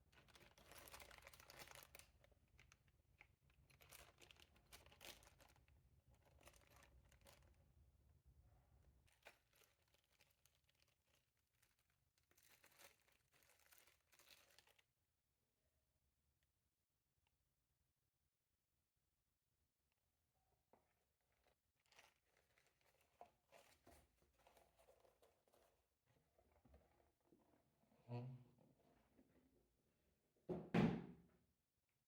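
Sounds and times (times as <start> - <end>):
packaging crinkling and rustling: 0.1 - 7.6, 9.0 - 14.9, 21.3 - 25.8.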